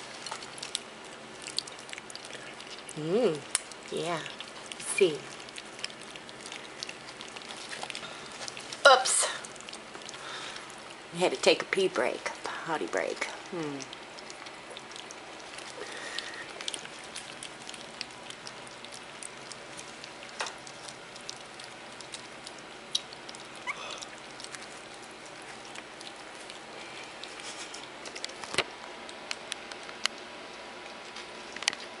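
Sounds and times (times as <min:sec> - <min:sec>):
puppies lapping and chewing food: 0:00.0 - 0:32.0.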